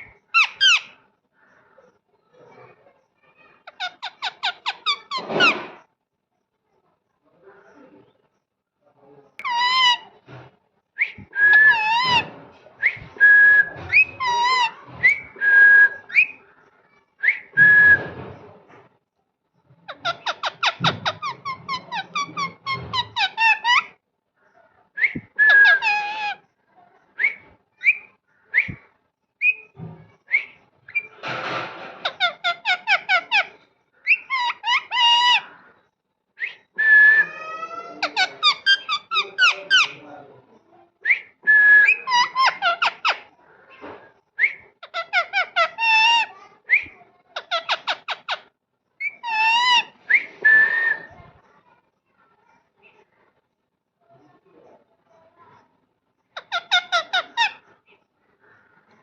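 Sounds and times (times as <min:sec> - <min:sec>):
parrot whistling and chattering: 0:03.7 - 0:05.6, 0:09.4 - 0:10.1, 0:11.1 - 0:16.4, 0:19.9 - 0:23.9, 0:25.0 - 0:26.4, 0:32.0 - 0:35.5, 0:36.4 - 0:40.0, 0:41.1 - 0:43.3, 0:44.4 - 0:51.1, 0:56.4 - 0:57.6.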